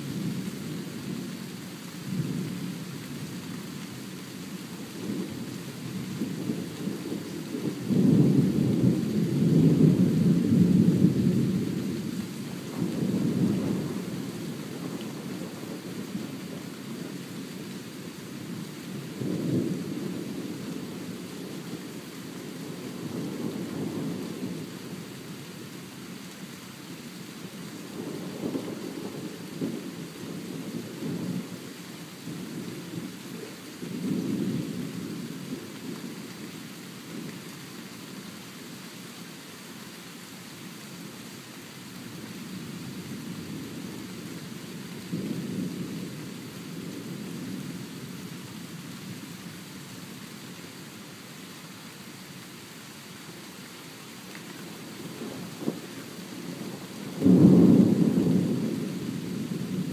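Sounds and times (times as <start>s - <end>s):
rain hissing: 0.0s - 59.9s
thunder rumbling: 6.2s - 16.6s, 54.6s - 59.9s.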